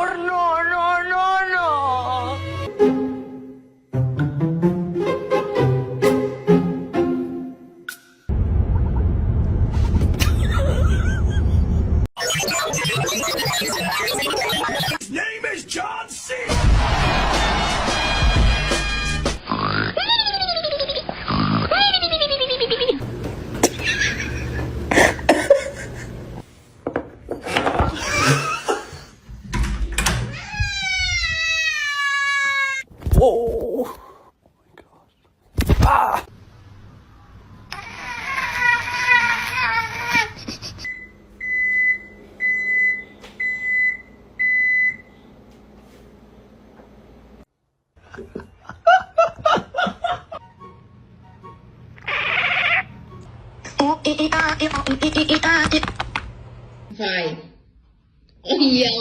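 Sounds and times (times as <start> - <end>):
person laughing in short bursts: 39.4 - 40.9
cat meowing: 52.0 - 53.0.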